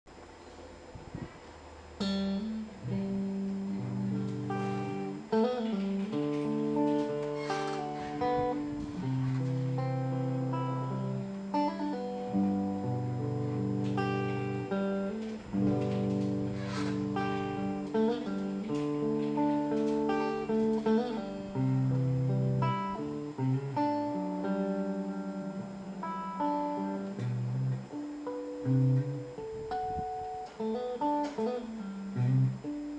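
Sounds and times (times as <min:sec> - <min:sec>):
electric guitar chords and notes: 0:01.0 - 0:32.9.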